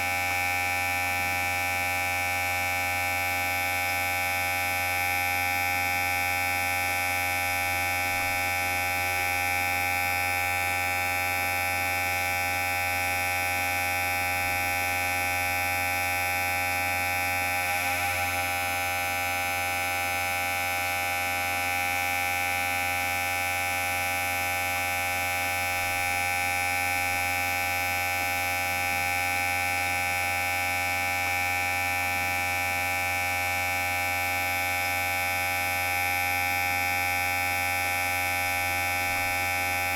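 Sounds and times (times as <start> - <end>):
electric hair clipper buzzing: 5.1 - 20.0, 34.7 - 39.9.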